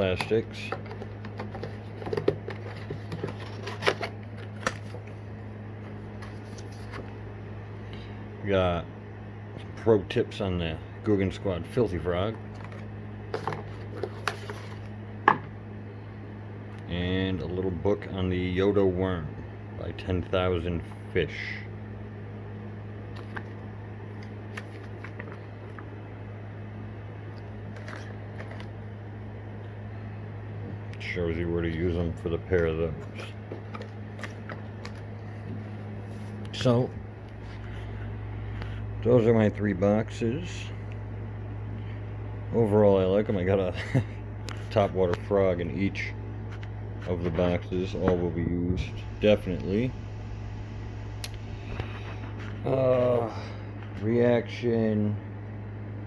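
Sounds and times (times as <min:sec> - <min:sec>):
steady low hum: 0:00.0 - 0:56.0
packages and paper rustling: 0:00.4 - 0:07.2, 0:12.5 - 0:15.0, 0:32.6 - 0:36.8.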